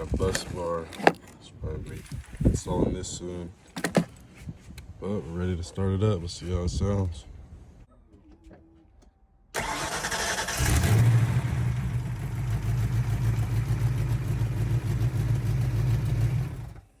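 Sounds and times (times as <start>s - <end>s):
starter motor cranking: 9.6s - 11.4s
car engine idling: 9.6s - 17.0s.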